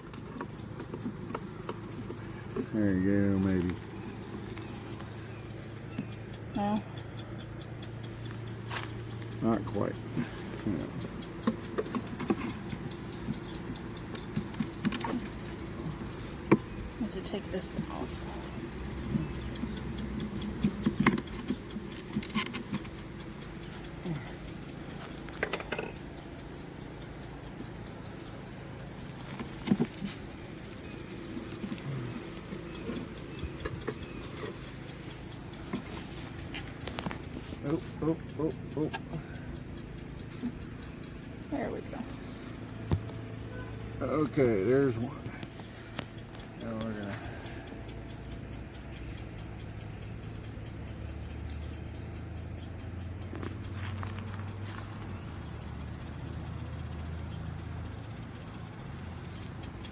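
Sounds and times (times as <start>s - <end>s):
honeybees buzzing: 0.0s - 59.9s
lawn mower droning: 0.0s - 59.9s
lawn sprinkler ticking: 0.0s - 59.9s
light clicks of hive parts: 45.0s - 59.9s.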